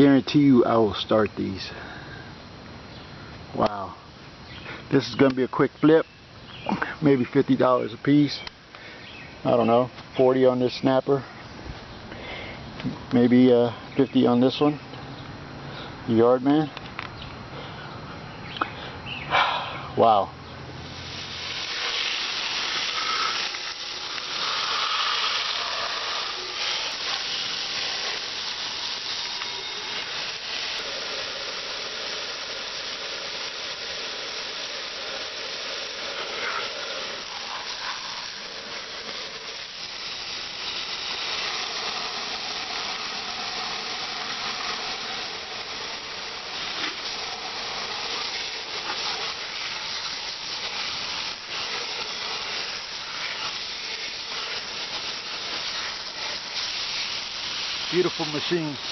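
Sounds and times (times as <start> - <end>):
water jet spraying: 20.0 - 58.9.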